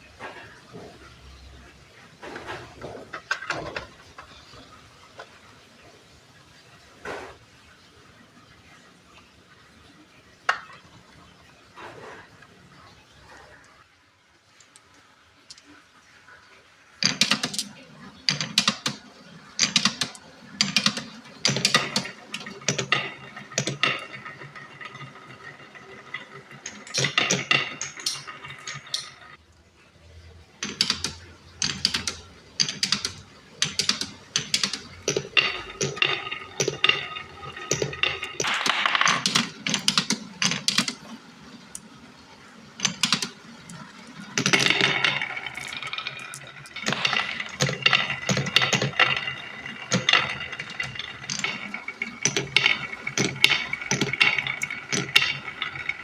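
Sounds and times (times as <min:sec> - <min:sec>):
marbles rolling down wooden run: 0:02.2 - 0:05.3, 0:17.0 - 0:29.4, 0:30.6 - 0:56.0.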